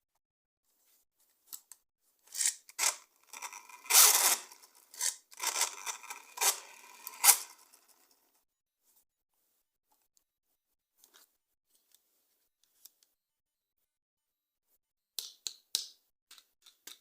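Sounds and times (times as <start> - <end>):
toy packaging rustling: 2.3 - 8.3.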